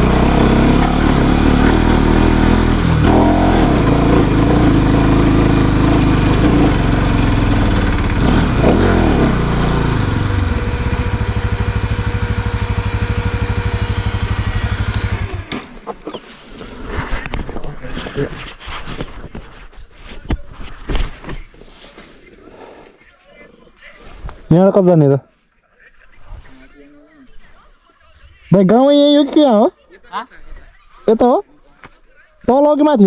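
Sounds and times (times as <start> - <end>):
motorcycle engine running: 0.0 - 16.2.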